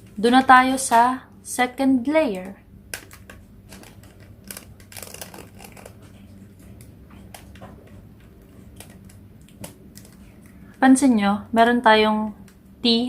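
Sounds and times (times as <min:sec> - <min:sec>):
faint steady hum: 0:00.0 - 0:13.0
puzzle cube twisting clicks: 0:03.0 - 0:06.0.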